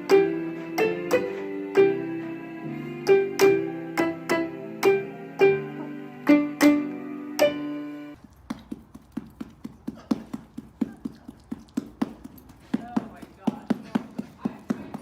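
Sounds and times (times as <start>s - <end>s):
plucked and keyboard music: 0.0s - 8.2s.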